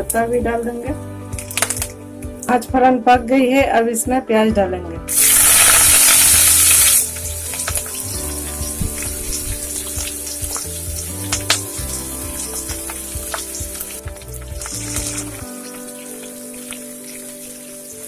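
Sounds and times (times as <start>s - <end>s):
oil crackling and popping: 1.3s - 2.0s, 5.1s - 18.0s
onions sizzling in hot oil: 5.1s - 18.0s.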